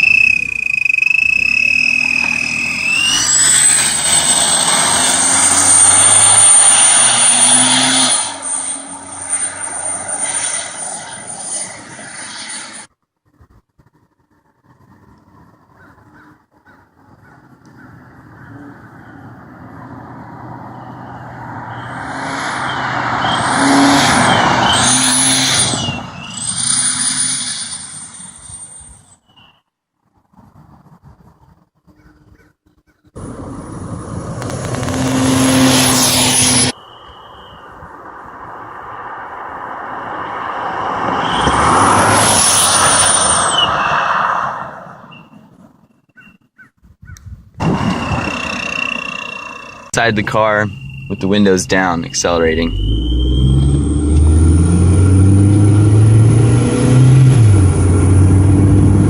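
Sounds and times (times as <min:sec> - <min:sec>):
high thin exhaust whistle: 0:00.0 - 0:04.4, 0:49.9 - 0:54.2
high shrill exhaust whistle: 0:00.0 - 0:11.8, 0:21.6 - 0:29.6, 0:34.7 - 0:37.9, 0:41.1 - 0:43.9, 0:47.8 - 0:54.6
car driving past: 0:18.0 - 0:27.4, 0:33.2 - 0:36.8, 0:37.9 - 0:45.1, 0:47.6 - 0:59.0.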